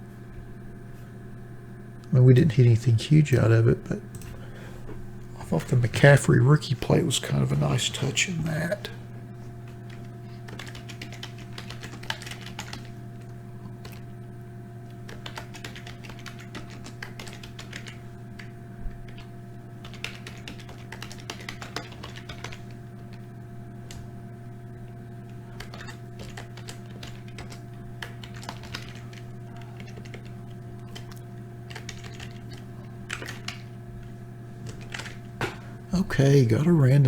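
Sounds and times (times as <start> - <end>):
low electrical hum: 0.0 - 37.0
keyboard typing: 9.6 - 13.0, 15.0 - 18.5, 19.1 - 23.2, 25.4 - 35.3.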